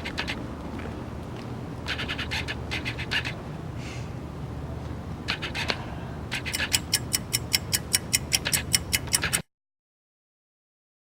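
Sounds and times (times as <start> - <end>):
winder ratcheting clicks: 6.5 - 9.4.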